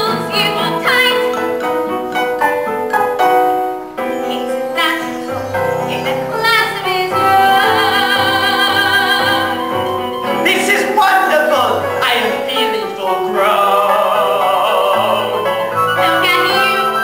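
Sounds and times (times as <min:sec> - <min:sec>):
instrumental accompaniment: 0:00.0 - 0:17.0
woman singing a ballad: 0:04.3 - 0:09.9.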